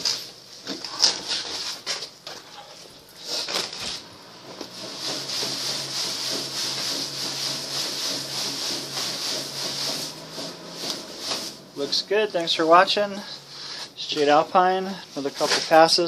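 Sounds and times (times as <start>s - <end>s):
pump humming: 2.5s - 14.4s
pump hissing: 2.6s - 16.0s.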